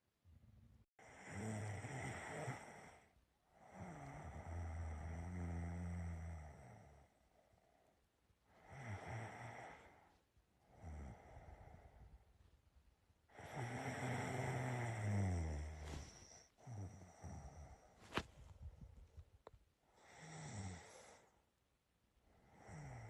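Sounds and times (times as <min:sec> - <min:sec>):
person snoring: 0:01.0 - 0:07.1, 0:08.6 - 0:10.0, 0:10.7 - 0:11.9, 0:13.3 - 0:18.2, 0:20.0 - 0:21.3, 0:22.4 - 0:23.0.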